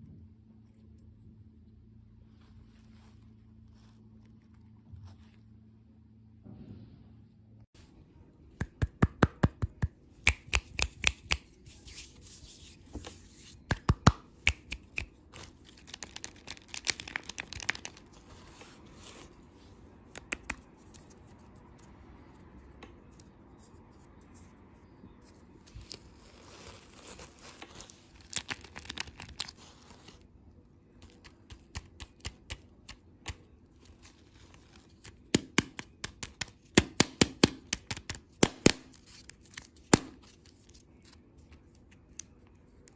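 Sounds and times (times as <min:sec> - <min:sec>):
plastic packaging crackling: 0:15.3 - 0:19.2, 0:25.7 - 0:30.2.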